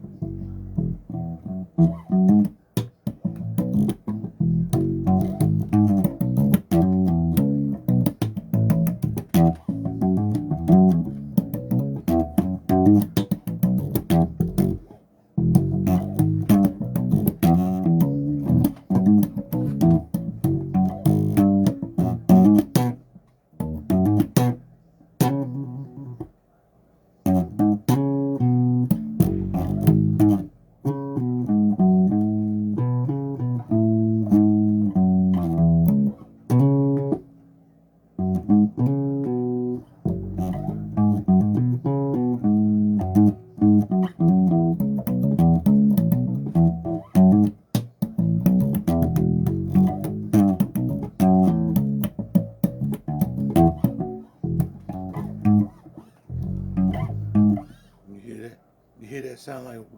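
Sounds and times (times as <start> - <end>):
electric bass guitar notes: 0.0 - 26.2, 27.2 - 37.4, 38.2 - 58.2.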